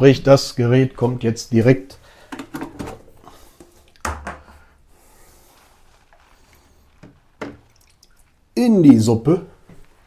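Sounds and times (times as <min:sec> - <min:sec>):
dull knock of object set down: 0:04.0 - 0:04.5.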